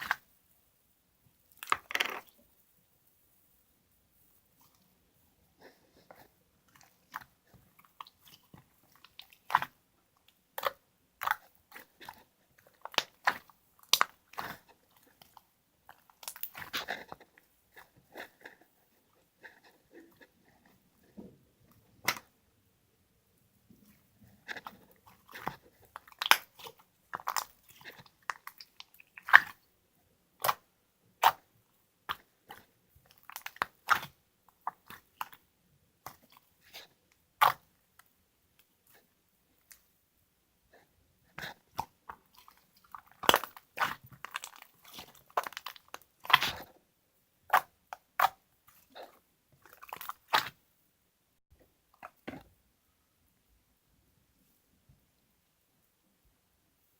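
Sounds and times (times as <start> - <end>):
crunchy chewing: 23.8 - 29.7, 41.4 - 46.8.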